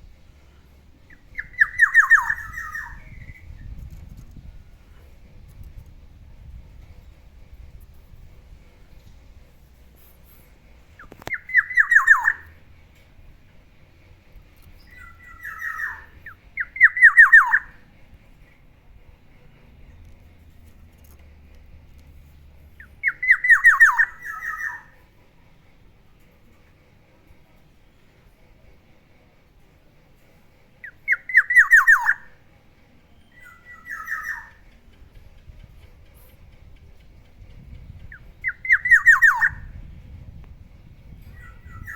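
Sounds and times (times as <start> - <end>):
bird calling: 1.1 - 3.4, 11.0 - 12.5, 14.8 - 17.8, 23.0 - 25.0, 30.8 - 32.3, 33.3 - 34.8, 38.1 - 39.7
harsh bird call: 11.3 - 12.4, 38.4 - 39.6.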